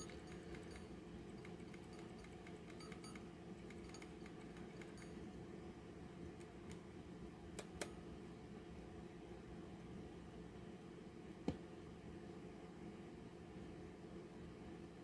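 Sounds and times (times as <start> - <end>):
alarm clock ticking: 0.0 - 5.2.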